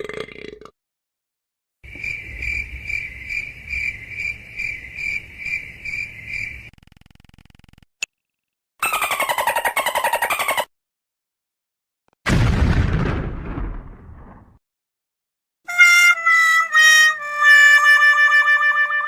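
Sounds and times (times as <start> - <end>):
cricket chirping: 1.9 - 6.8.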